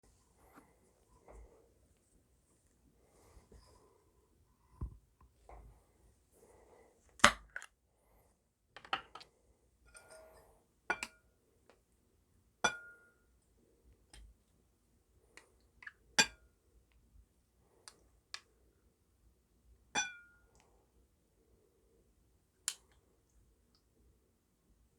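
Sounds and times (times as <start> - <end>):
glassware clinking: 20.0 - 20.3.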